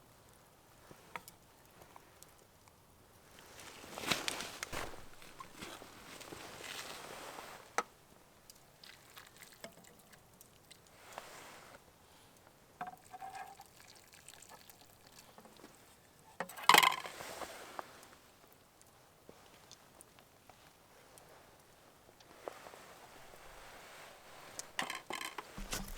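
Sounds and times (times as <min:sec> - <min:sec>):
cooking gear clicks and knocks: 0:04.0 - 0:06.5, 0:24.4 - 0:25.9.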